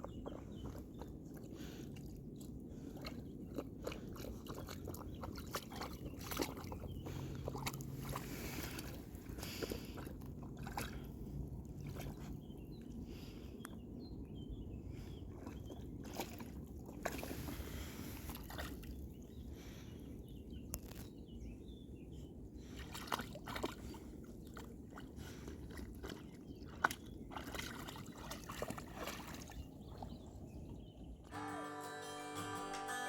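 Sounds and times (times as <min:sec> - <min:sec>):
small clicks and splashes: 0:00.0 - 0:11.1, 0:11.7 - 0:12.4, 0:15.4 - 0:17.5, 0:20.7 - 0:21.1, 0:22.8 - 0:30.0
lake water lapping: 0:00.0 - 0:13.6, 0:14.4 - 0:20.5, 0:22.6 - 0:31.3.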